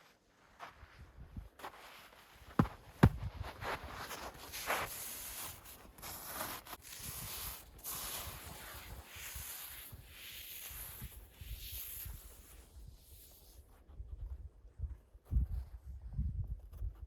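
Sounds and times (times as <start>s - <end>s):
footsteps on volcanic ash: 0.0s - 10.0s.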